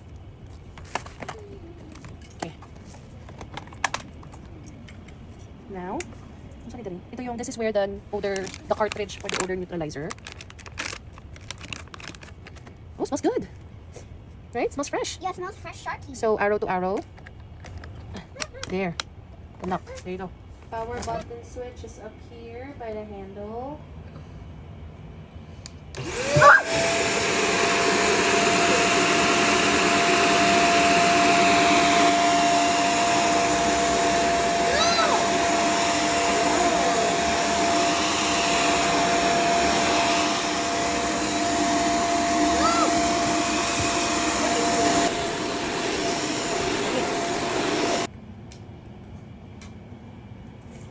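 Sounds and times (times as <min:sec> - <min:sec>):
vacuum cleaner motor whining: 0:08.1 - 0:12.6, 0:26.0 - 0:48.1.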